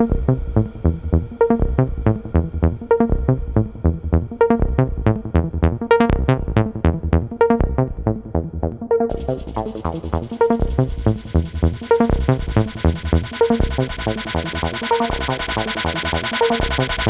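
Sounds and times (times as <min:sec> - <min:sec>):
bright high synth layer: 0:09.1 - 0:17.0
electronic dance music: 0:09.1 - 0:17.0.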